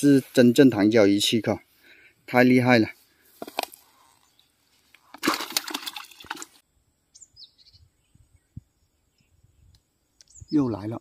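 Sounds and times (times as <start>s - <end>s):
fish thrashing in water: 5.0s - 6.6s.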